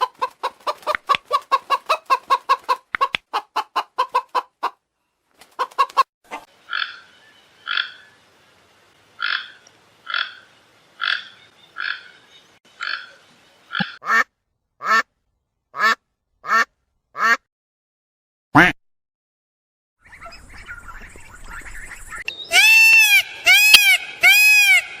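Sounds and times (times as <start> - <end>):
loud falling animal calls: 22.5 - 25.0.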